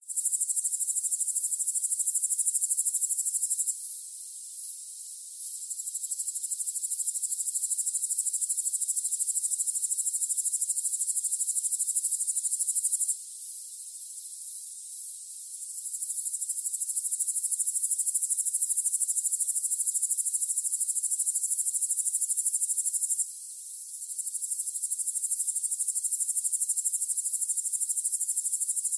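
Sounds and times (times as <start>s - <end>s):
faint insect chorus: 0.0s - 28.9s
high-pitched insect trill: 0.0s - 28.9s.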